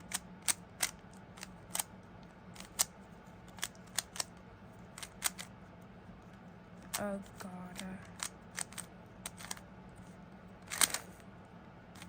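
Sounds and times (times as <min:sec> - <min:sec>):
puzzle cube plastic clicks: 0:00.0 - 0:01.9, 0:02.5 - 0:04.3, 0:04.9 - 0:05.5, 0:06.8 - 0:09.6, 0:10.6 - 0:11.3
faint steady hum: 0:00.0 - 0:12.0.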